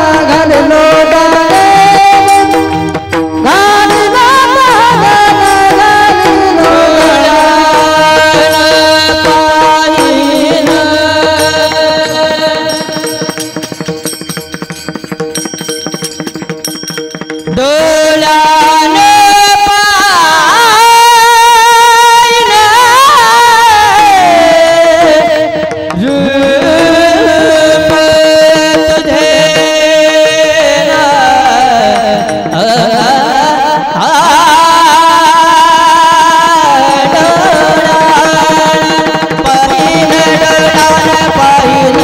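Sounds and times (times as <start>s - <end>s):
instrumental accompaniment: 0.0s - 42.0s
person singing devotional song: 0.0s - 42.0s.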